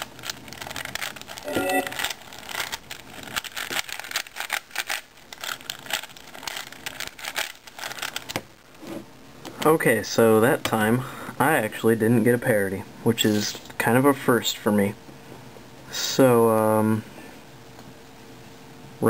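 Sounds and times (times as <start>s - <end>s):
puzzle cube clicking and rattling: 0.0s - 8.4s.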